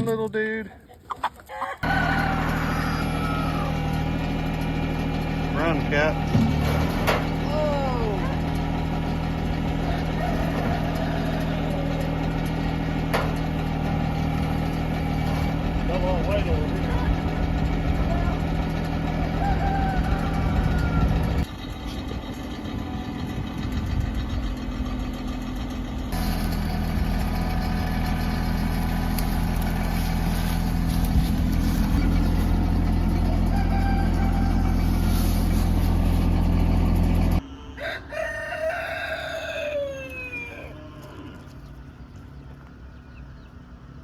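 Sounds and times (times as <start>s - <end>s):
rooster crowing: 1.5s - 4.2s, 9.4s - 12.9s, 19.1s - 21.5s, 32.3s - 36.0s, 37.3s - 41.7s
tractor engine running: 1.8s - 37.4s.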